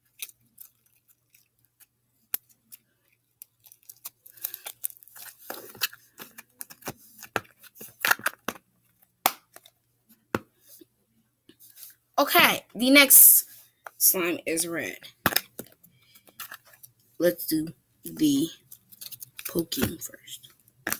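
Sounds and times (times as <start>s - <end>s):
slime crackling and squishing: 0.0s - 8.0s.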